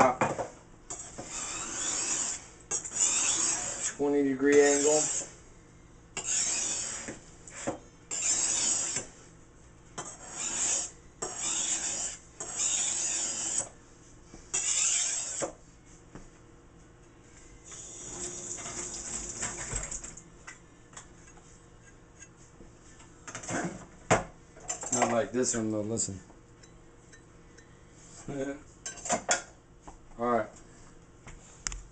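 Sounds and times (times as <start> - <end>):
knife scraping on sharpener: 0.9 - 5.3, 6.2 - 9.1, 10.0 - 13.7, 14.5 - 15.5.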